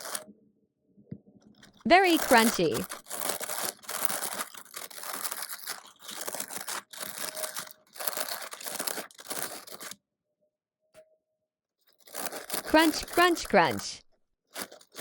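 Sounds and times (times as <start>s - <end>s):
squishy toy beads crunching: 1.9s - 9.8s.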